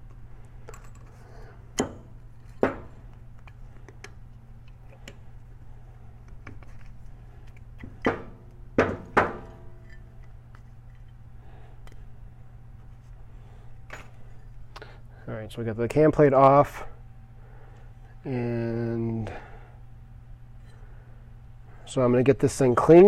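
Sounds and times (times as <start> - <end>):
steady low hum: 0.0 - 23.0
metal parts and tools clinking: 0.6 - 1.2.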